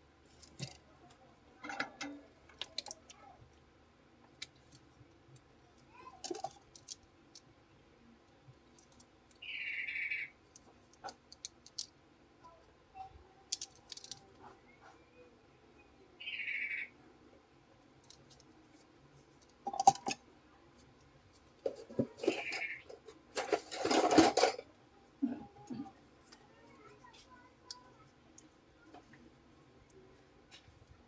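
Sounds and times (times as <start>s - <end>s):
small metal tools clicking: 4.4s - 7.4s, 13.5s - 14.2s, 23.4s - 24.6s
scraping rustle: 21.6s - 24.6s.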